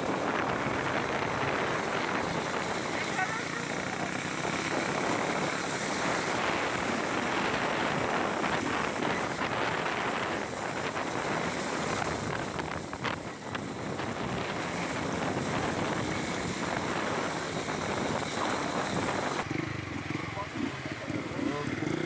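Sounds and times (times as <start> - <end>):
wind noise on microphone: 0.0 - 19.5.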